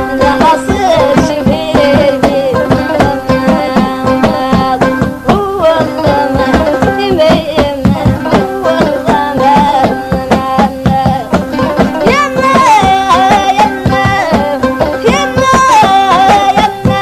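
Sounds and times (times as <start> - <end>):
drum strikes: 0.0 - 17.0
solo voice singing: 0.0 - 17.0
sustained instrumental tones: 0.0 - 17.0.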